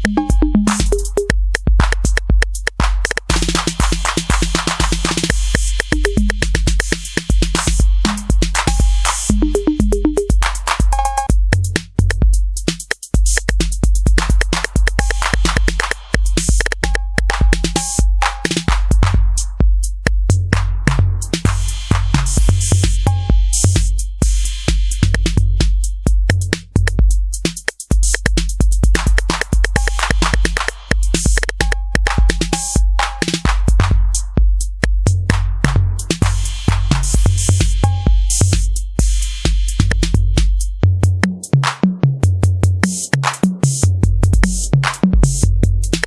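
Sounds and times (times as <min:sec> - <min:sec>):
crisp hi-hat: 0:00.0 - 0:41.6, 0:42.2 - 0:46.0
deep kick drum: 0:00.0 - 0:42.9, 0:43.8 - 0:46.0.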